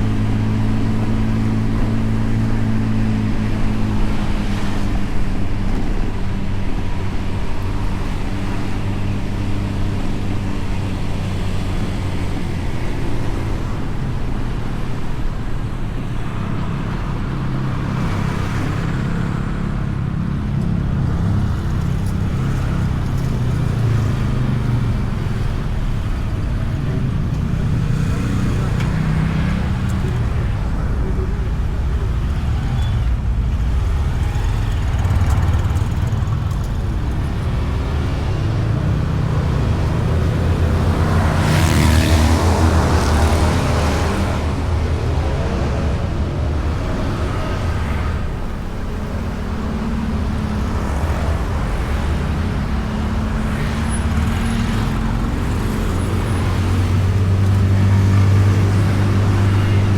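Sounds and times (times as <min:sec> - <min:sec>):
road and wind noise: 0:00.0 - 0:59.9
traffic: 0:00.0 - 0:59.9
scooter engine running: 0:33.7 - 0:43.6.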